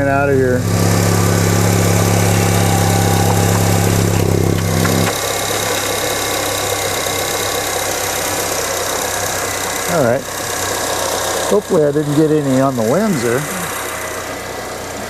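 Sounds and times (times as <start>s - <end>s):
car engine idling: 0.0s - 15.0s
strong low hum: 0.3s - 5.1s.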